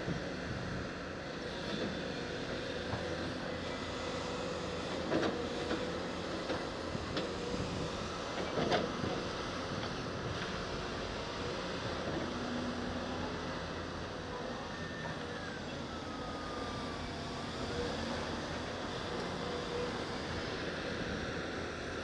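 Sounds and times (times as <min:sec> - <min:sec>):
diesel engine running: 0:00.0 - 0:22.0
faint steady whine: 0:09.3 - 0:22.0.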